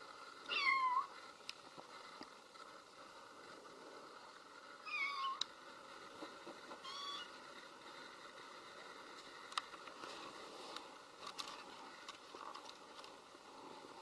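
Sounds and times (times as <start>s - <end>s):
kitten meowing: 6.8s - 7.3s.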